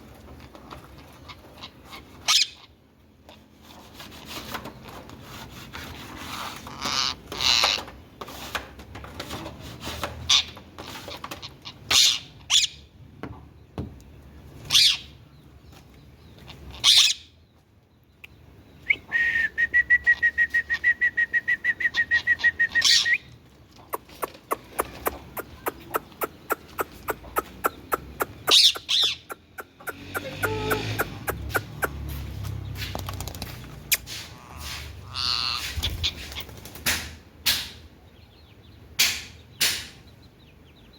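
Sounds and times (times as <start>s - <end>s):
parakeet calling: 14.7s - 15.2s, 16.5s - 17.3s, 24.5s - 32.0s, 34.4s - 36.2s.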